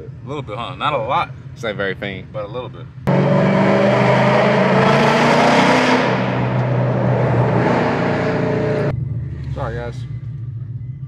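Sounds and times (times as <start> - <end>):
car engine under heavy throttle: 3.1 - 10.7.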